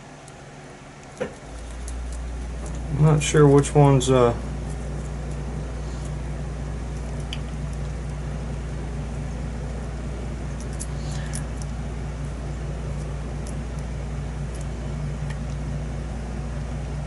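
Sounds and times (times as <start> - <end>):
low hum and hiss: 0.0 - 17.0.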